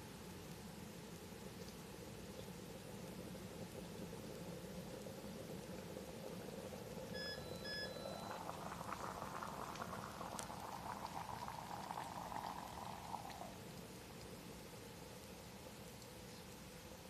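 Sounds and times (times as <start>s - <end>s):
electric kettle heating water: 0.0s - 17.0s
short electronic beeps: 7.2s - 8.3s.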